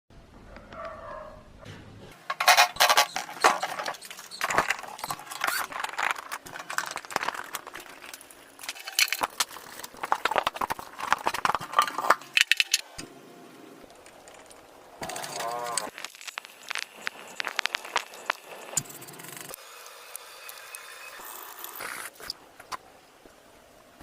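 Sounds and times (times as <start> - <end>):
metal parts clinking and rattling: 2.1 - 12.9, 14.0 - 16.8.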